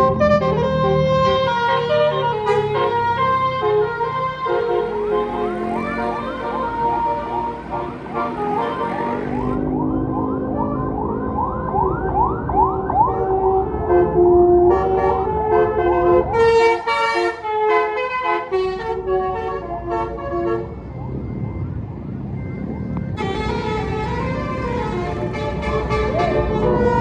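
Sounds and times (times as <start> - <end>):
multi-tone bus horn: 0.0 - 9.8, 13.0 - 21.0, 23.1 - 27.0
low engine noise: 3.6 - 14.7, 18.6 - 27.0.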